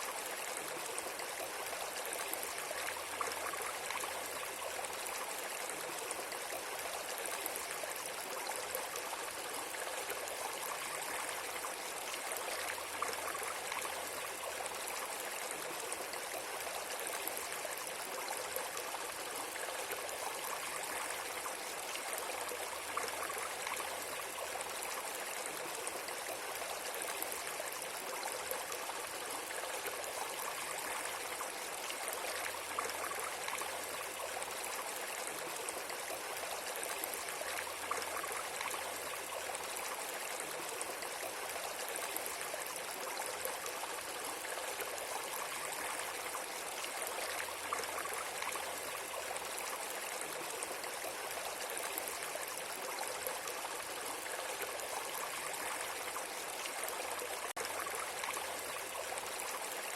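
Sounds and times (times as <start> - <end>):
flowing water: 0.0 - 59.9.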